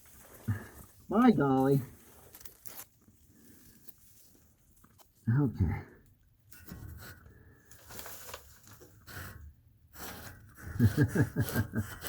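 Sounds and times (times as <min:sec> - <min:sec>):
insulation foil crinkling: 0:01.6 - 0:05.1, 0:07.7 - 0:09.2.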